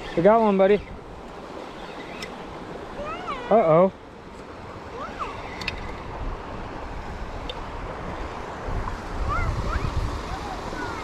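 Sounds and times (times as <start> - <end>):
flowing creek water: 0.0 - 11.0
wind buffeting microphone: 4.5 - 11.0.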